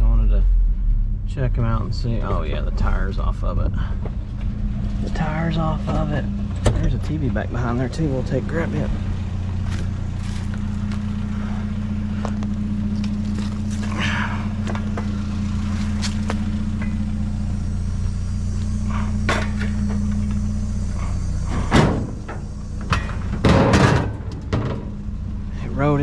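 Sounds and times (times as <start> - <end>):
truck engine running: 0.0 - 26.0
truck door clunks: 21.0 - 25.0.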